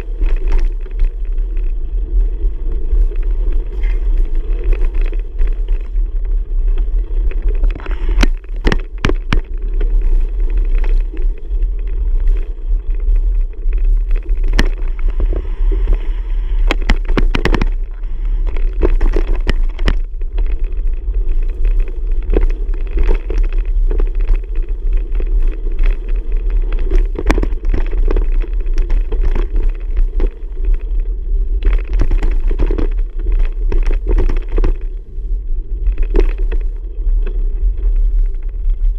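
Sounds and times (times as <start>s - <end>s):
bicycle ride rumble: 0.0s - 38.9s
knocks and rattles over bumps: 3.2s - 15.2s, 16.6s - 35.0s.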